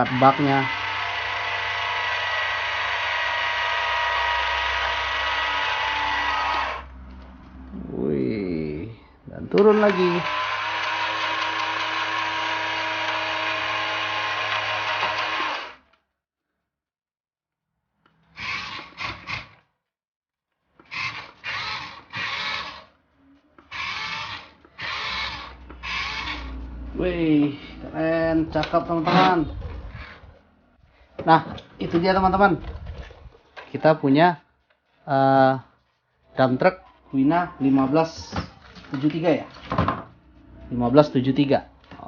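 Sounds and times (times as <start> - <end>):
toy lift motor whining: 0.0 - 6.9, 9.6 - 16.0, 18.2 - 19.6, 20.8 - 22.9, 23.6 - 26.7.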